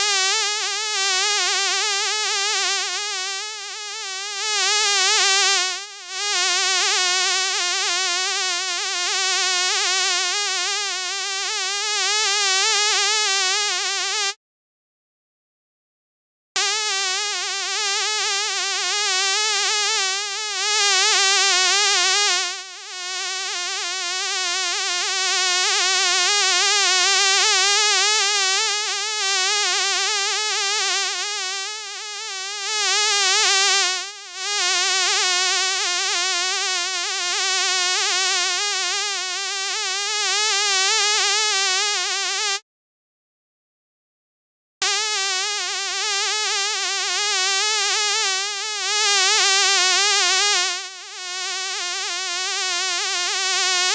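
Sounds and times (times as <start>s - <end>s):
fly buzzing: 7.8s - 14.4s, 16.6s - 42.6s, 44.8s - 53.9s.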